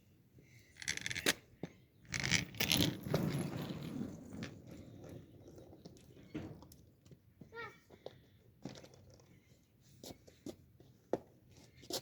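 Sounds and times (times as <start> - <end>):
skateboard wheels rolling on rough ground: 2.0 - 7.4.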